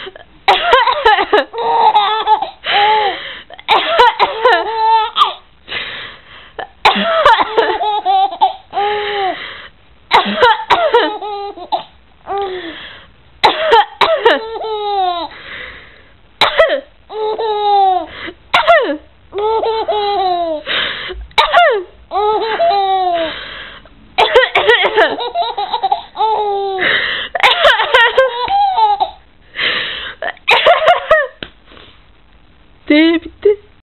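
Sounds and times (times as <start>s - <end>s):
person coughing: 0.0s - 1.5s, 3.6s - 4.7s, 6.8s - 7.8s, 10.1s - 11.1s, 13.4s - 14.4s, 16.4s - 16.9s, 24.2s - 25.2s
baby laughing: 0.5s - 2.6s, 4.0s - 5.4s, 7.1s - 8.9s, 10.4s - 12.4s, 14.1s - 15.3s, 17.1s - 18.1s, 19.3s - 20.7s, 21.4s - 23.3s, 24.2s - 29.2s.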